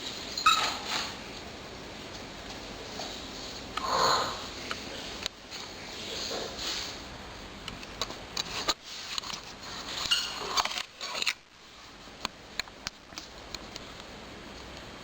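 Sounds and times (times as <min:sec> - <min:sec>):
rustling and scraping in cage: 0:00.0 - 0:07.1, 0:08.4 - 0:12.2.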